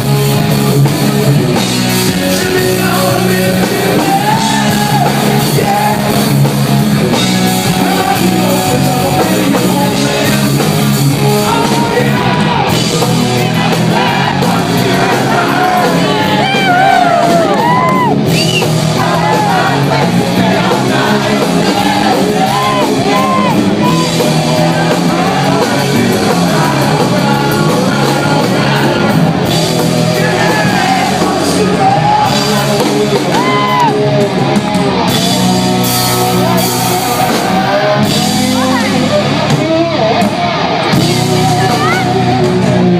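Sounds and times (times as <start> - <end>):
live rock band playing: 0.0 - 42.9
person singing lead vocal: 1.7 - 42.9
shouting: 13.9 - 20.0, 21.8 - 24.3, 33.3 - 34.0.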